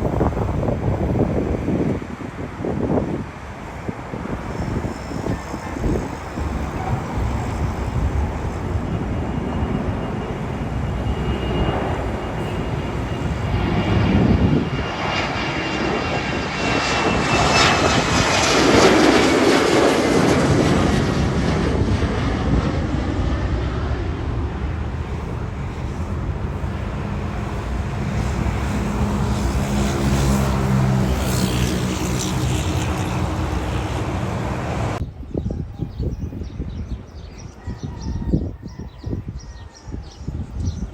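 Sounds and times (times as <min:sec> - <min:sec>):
airliner engine passing by: 0:00.0 - 0:40.9
high engine whine falling in pitch: 0:04.6 - 0:31.5.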